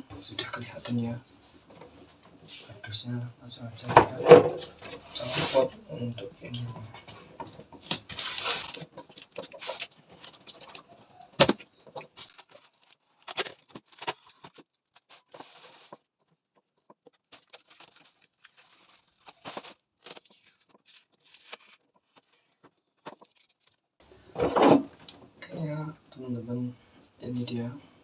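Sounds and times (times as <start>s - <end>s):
cardboard rustling and scraping: 4.0s - 5.7s, 6.6s - 23.8s.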